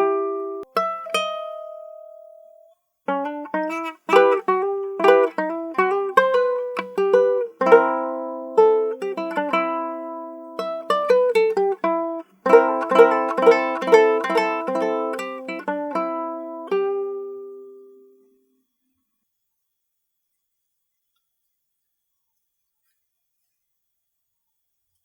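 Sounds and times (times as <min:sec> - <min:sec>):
plucked string instrument: 0:00.0 - 0:18.3.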